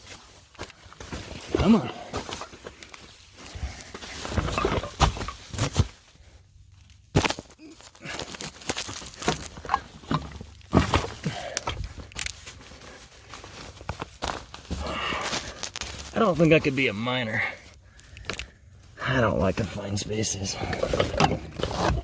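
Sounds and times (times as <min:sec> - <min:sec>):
rustling plastic sheeting: 0:00.0 - 0:17.4.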